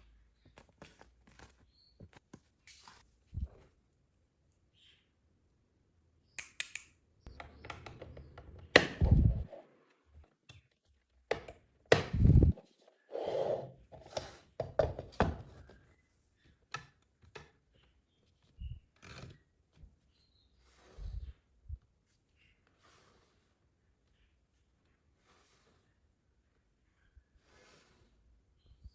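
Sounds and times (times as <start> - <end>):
knocks and taps: 11.3 - 12.4.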